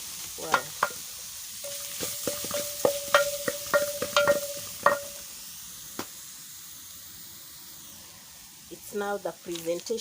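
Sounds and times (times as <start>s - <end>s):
faint hiss: 0.0s - 10.0s
spoon knocking on metal pot: 0.5s - 1.0s, 1.7s - 5.2s.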